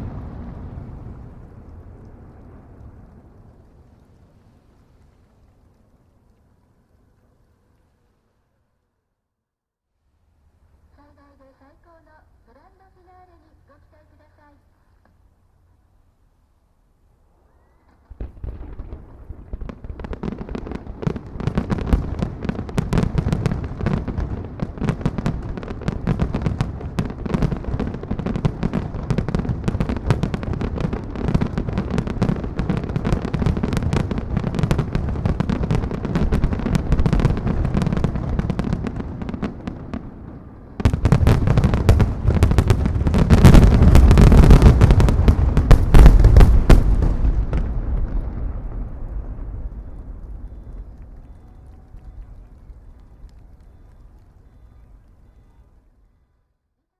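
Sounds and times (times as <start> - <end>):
fireworks bursts and crackling bangs: 0.0 - 5.9, 17.9 - 55.8.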